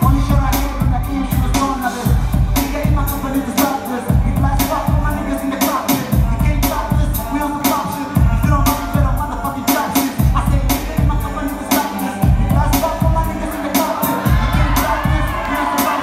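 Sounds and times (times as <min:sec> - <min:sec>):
hip hop backing track: 0:00.0 - 0:16.0.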